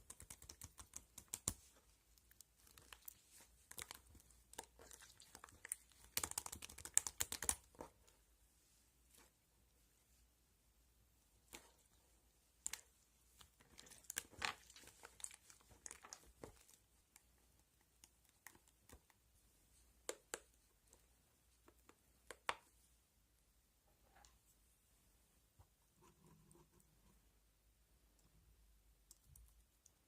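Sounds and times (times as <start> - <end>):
crinkling and rustling: 11.4 - 17.4.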